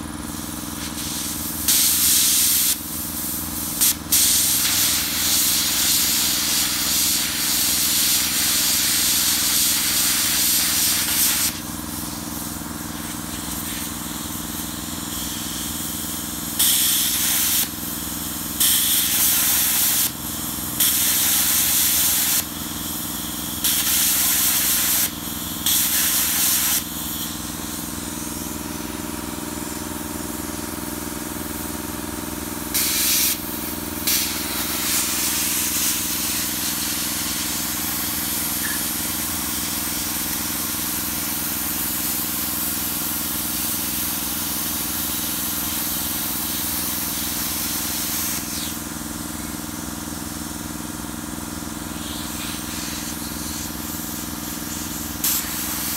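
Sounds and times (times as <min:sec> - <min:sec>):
plasma cutter torch hissing: 0:00.2 - 0:28.7, 0:32.7 - 0:50.4, 0:51.8 - 0:55.9
steady machine hum: 0:10.2 - 0:45.6.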